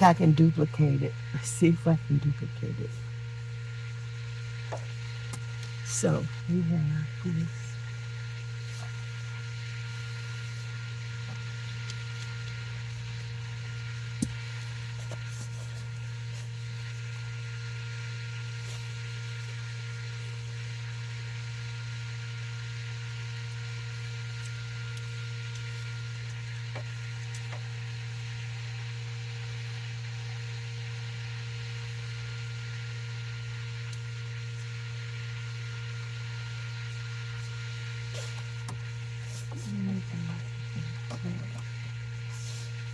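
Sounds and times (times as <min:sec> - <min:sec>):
low electrical hum: 0:00.0 - 0:42.9.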